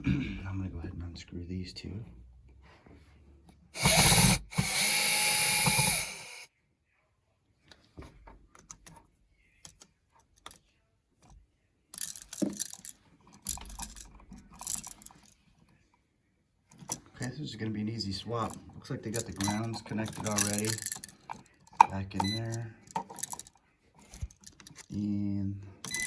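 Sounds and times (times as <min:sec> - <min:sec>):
power driver unscrewing: 0:03.8 - 0:06.4.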